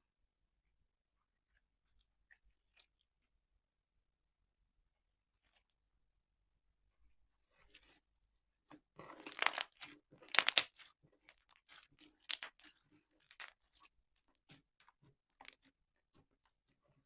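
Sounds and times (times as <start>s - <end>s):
slime squelching: 9.0s - 13.8s.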